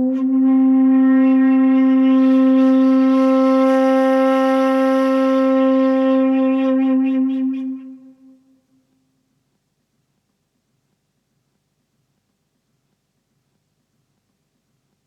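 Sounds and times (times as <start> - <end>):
long held wind instrument note: 0.0 - 8.4.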